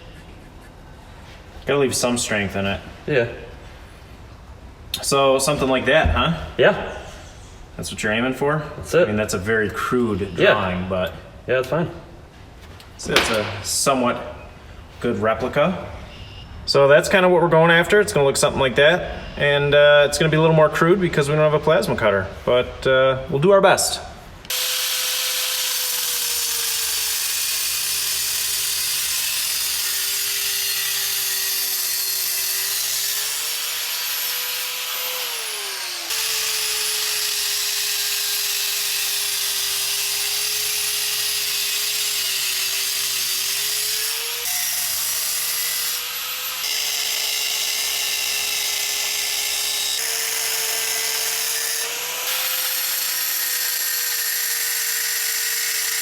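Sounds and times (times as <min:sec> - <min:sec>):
power grinder cutting steel: 0:24.5 - 0:56.0.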